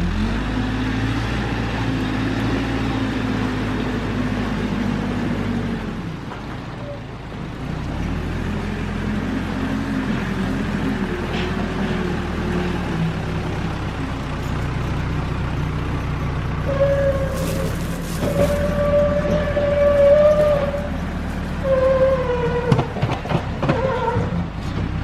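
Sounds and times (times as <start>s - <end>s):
diesel engine running under load: 0.0s - 25.0s.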